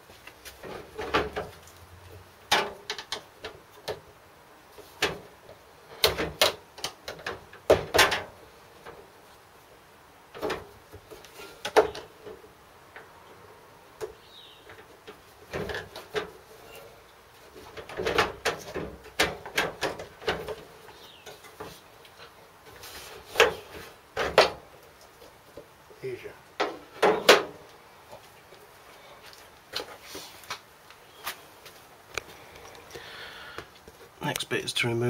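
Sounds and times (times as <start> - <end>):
washing machine parts clattering: 17.6 - 20.6.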